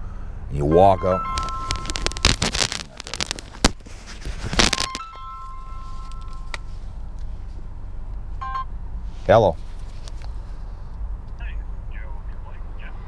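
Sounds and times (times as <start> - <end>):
low steady rumble: 0.0 - 12.9
phone ringing two-note tone: 4.8 - 6.5.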